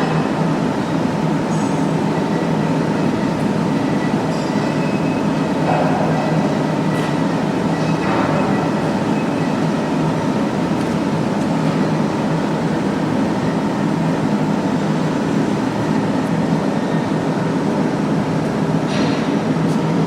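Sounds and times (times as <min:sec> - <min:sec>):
machine motor humming: 0:00.5 - 0:16.0.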